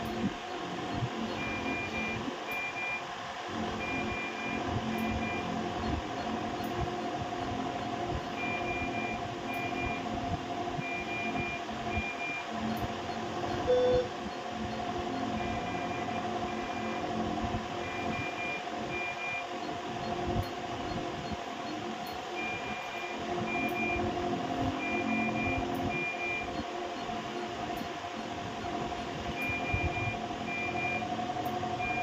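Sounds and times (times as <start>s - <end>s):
steady hum: 0.0s - 32.0s
lower electronic beep: 10.8s - 14.1s.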